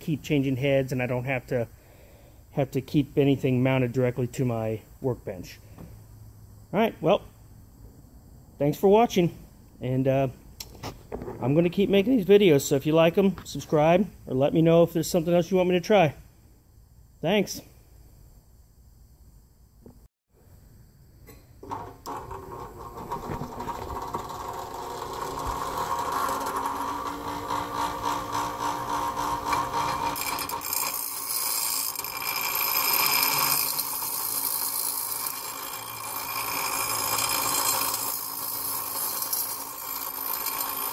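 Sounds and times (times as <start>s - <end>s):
bench grinder motor whine: 21.6s - 40.9s
hissing grind: 22.0s - 40.9s.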